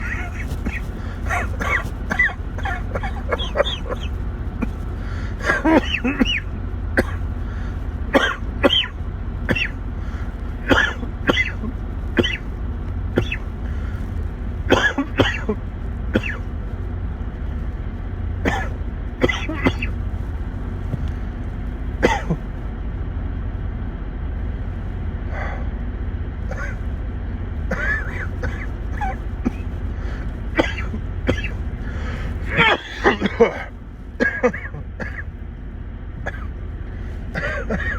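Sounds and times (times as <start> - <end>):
man clearing throat: 0.0 - 4.8, 5.4 - 7.2, 8.2 - 9.8, 10.6 - 12.5, 13.2 - 13.4, 14.7 - 15.6, 16.2 - 16.4, 18.5 - 20.0, 22.0 - 22.5, 26.5 - 26.8, 27.7 - 29.7, 30.6 - 31.6, 32.5 - 35.3, 37.3 - 37.9
man coughing: 0.0 - 7.3, 8.1 - 9.8, 10.6 - 12.5, 13.2 - 13.4, 14.7 - 15.6, 16.2 - 16.4, 18.4 - 20.0, 22.0 - 22.5, 26.5 - 26.8, 27.7 - 29.8, 30.5 - 31.6, 32.5 - 35.3, 36.2 - 36.5, 37.3 - 37.9
steady low hum: 0.0 - 37.9.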